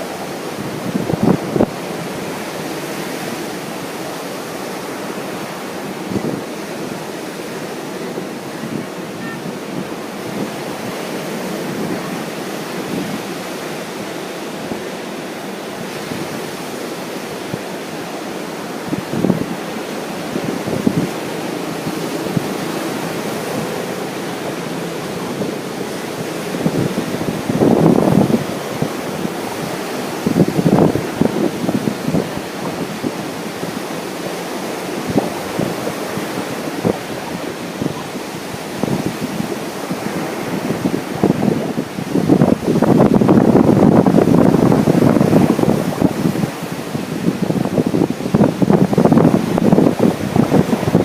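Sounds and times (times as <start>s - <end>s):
ocean surf washing on beach: 0.0s - 51.0s
wind buffeting microphone: 0.0s - 51.0s.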